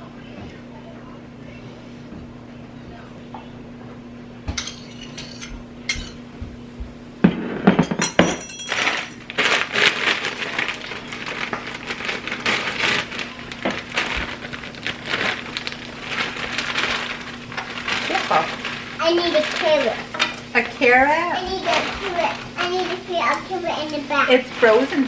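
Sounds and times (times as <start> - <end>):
pots and pans clattering: 4.5 - 6.6, 7.3 - 25.0
utensil scraping in pan: 4.6 - 6.2.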